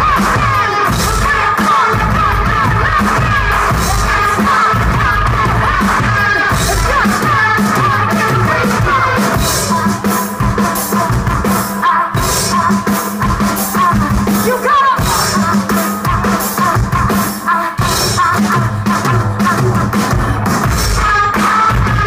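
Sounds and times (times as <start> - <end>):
live rock music: 0.0 - 22.0
pounding drums: 0.0 - 22.0
woman singing: 0.0 - 22.0.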